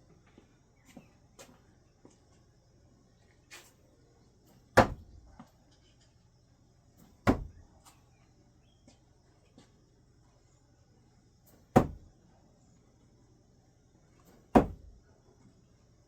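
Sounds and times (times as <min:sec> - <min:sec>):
screwdrivers hitting target: 0:04.8 - 0:05.2.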